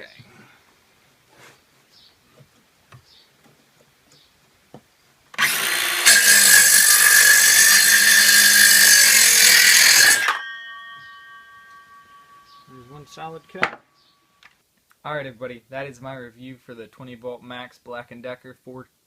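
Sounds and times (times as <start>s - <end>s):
saw blade spinning down whine: 5.4s - 11.1s
circular saw cutting wood: 5.4s - 11.2s.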